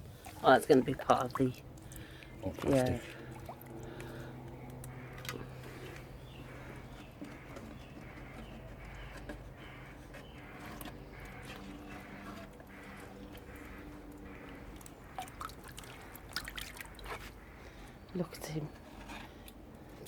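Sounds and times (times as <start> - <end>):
low hum: 1.6 - 17.7
hands squelching through mud: 10.3 - 17.4.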